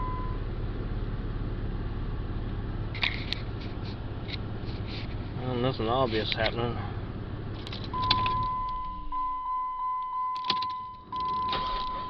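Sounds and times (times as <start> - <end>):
pulsing car warning tone: 0.0 - 0.5, 7.9 - 12.0
keys jingling and clicking: 7.6 - 8.5, 10.4 - 11.9.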